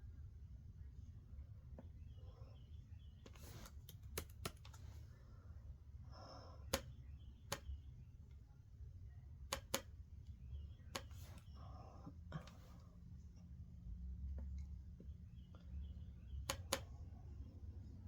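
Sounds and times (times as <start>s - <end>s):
steady low hum: 0.0s - 18.0s
sharp clicks: 3.3s - 4.8s, 6.7s - 7.9s, 9.5s - 11.4s, 16.4s - 16.9s.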